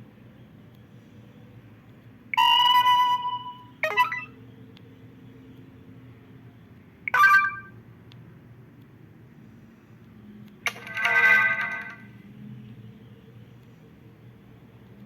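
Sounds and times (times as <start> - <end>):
phone ringtone from small loudspeaker: 2.4 - 4.4, 7.1 - 7.7, 10.7 - 12.1.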